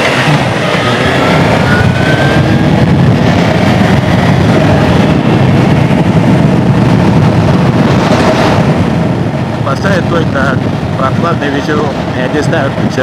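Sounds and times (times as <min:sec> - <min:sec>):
motorcycle engine running: 0:00.0 - 0:09.7.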